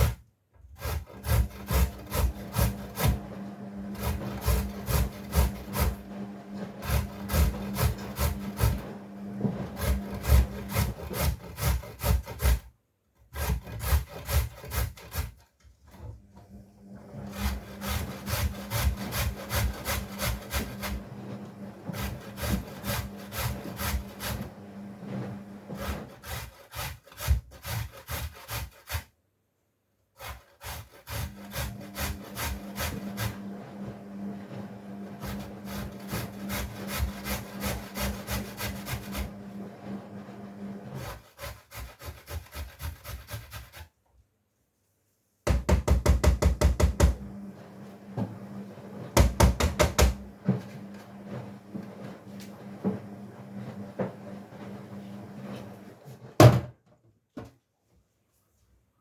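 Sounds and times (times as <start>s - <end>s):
scraping on wooden board: 0.8s - 3.3s, 3.9s - 12.7s, 17.2s - 29.1s, 30.2s - 33.4s, 34.5s - 40.0s, 40.8s - 43.9s, 49.0s - 56.5s
washing machine humming: 1.2s - 11.4s, 16.2s - 26.2s, 31.2s - 41.1s, 45.6s - 56.5s.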